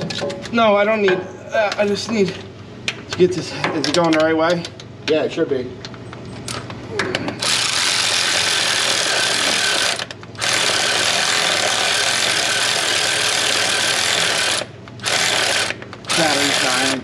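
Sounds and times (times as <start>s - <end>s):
cordless power tool running: 7.4s - 17.0s.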